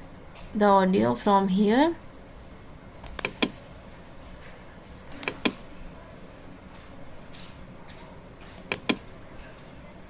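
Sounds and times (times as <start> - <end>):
smartwatch clicks: 3.0 - 3.6, 5.1 - 5.6, 8.6 - 9.0.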